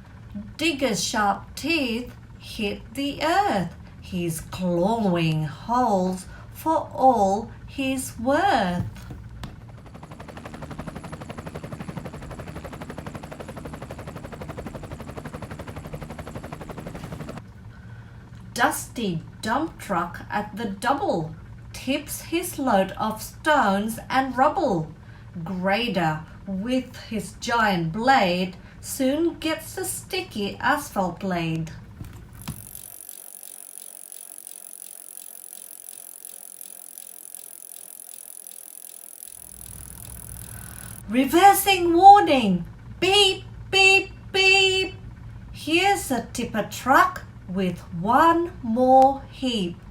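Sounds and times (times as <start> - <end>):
fast mechanical ticking rattle: 9.6 - 17.4, 32.2 - 41.0
pneumatic road drill hammering: 32.3 - 41.0.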